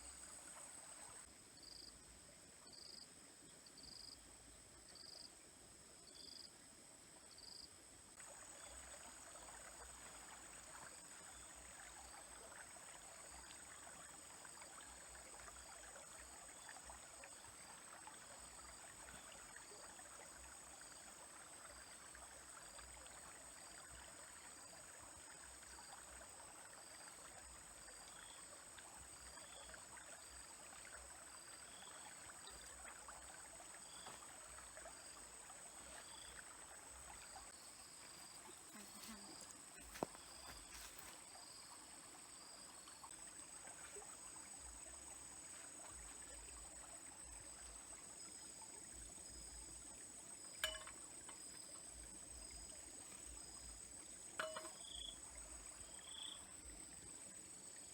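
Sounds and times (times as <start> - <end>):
stream trickling over stones: 0.0 - 1.6, 8.0 - 57.9.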